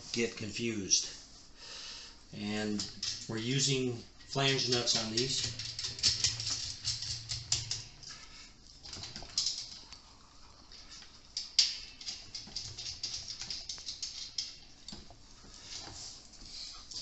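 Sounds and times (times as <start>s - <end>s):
metal nuts and brackets clinking: 2.7s - 8.0s.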